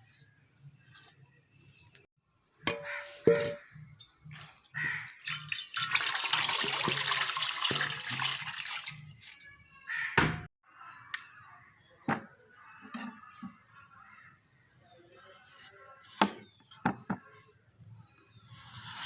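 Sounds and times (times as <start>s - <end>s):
water running and splashing: 4.3s - 9.5s.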